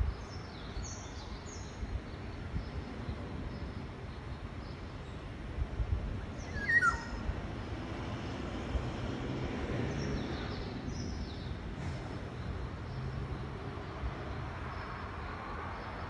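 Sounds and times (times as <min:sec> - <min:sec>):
faint high bird chirps: 0:06.4 - 0:07.2.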